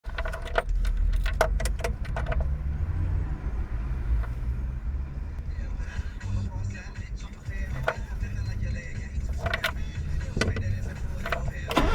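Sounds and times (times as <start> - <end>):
cold engine idling with piston knock: 5.9 - 11.9
sharp metallic clicks: 7.5 - 11.9.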